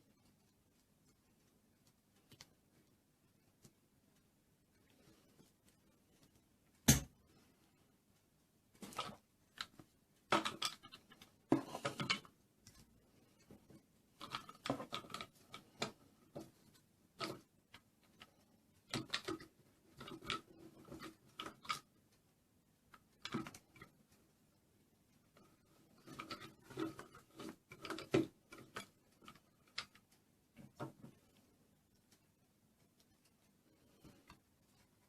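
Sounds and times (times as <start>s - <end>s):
plastic toy parts clicking: 8.8s - 12.8s, 14.2s - 16.0s, 17.2s - 21.9s.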